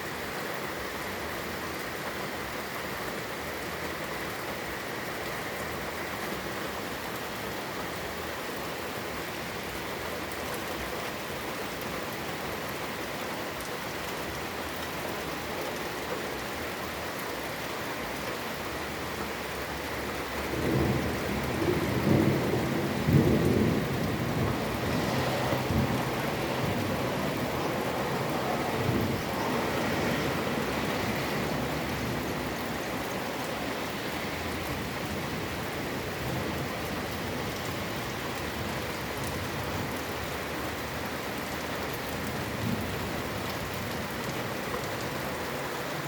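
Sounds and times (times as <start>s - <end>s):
steady rain falling: 0.0s - 46.0s
low rumble of thunder: 20.3s - 40.0s.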